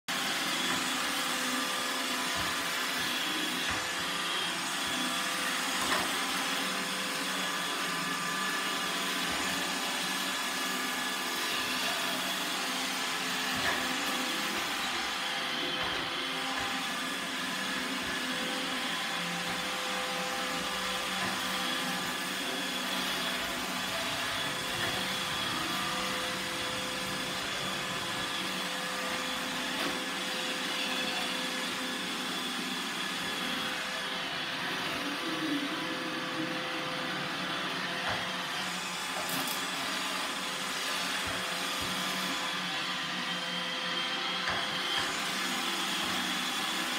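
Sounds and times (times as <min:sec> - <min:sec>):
robot vacuum motor whine: 0:00.1 - 0:46.9.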